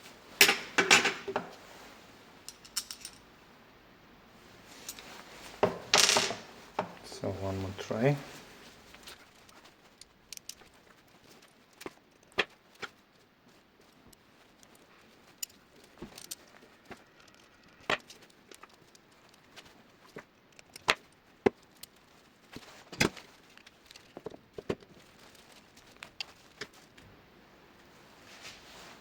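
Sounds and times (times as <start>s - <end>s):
metal bike parts clicking: 2.5s - 3.2s, 14.1s - 22.0s.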